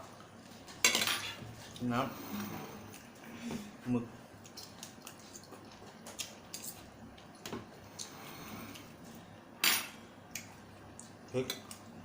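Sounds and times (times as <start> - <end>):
soft wet chewing: 1.6 - 9.4, 10.3 - 12.0.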